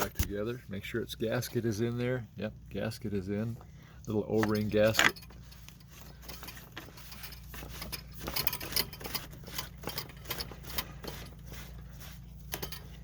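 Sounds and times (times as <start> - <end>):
steady low hum: 0.0 - 13.0
pipe fitting clicks and scrapes: 4.3 - 13.0.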